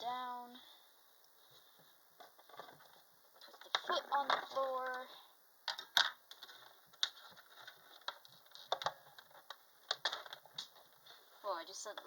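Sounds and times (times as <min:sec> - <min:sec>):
objects clicking and knocking: 0:02.2 - 0:05.0, 0:05.6 - 0:11.2.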